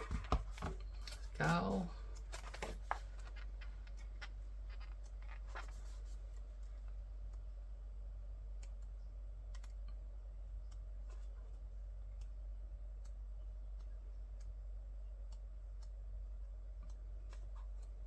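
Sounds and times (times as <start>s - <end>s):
photo book pages turning: 0.0s - 6.8s
steady low hum: 0.0s - 18.0s.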